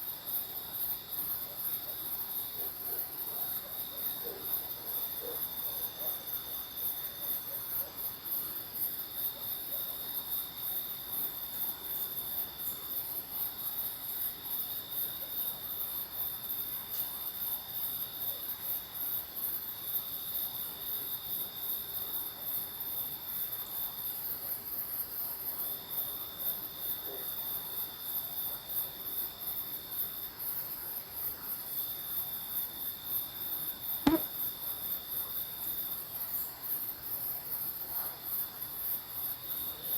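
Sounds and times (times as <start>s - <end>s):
low insect trill: 32.5s - 36.8s
sharp click: 34.1s - 34.3s.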